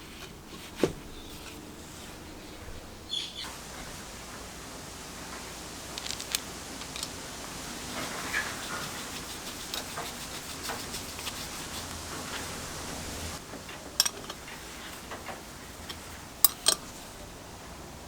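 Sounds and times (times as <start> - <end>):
low hiss: 0.0 - 18.0
metallic clicks and clinks: 5.8 - 7.2, 14.0 - 14.4, 15.8 - 17.0.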